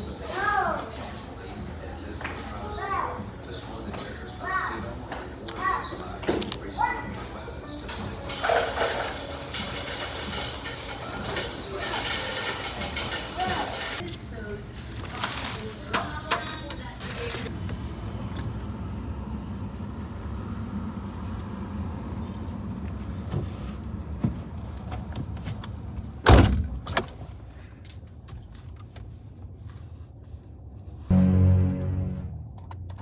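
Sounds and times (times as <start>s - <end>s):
short low drone: 31.1s - 32.6s
car engine rumble: 31.1s - 33.0s.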